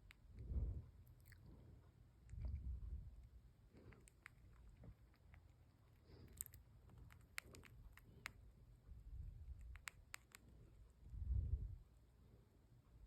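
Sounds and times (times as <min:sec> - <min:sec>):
low rumble: 0:00.0 - 0:03.7, 0:08.7 - 0:09.8, 0:10.8 - 0:12.0
hamster chewing and grinding teeth: 0:00.0 - 0:11.0.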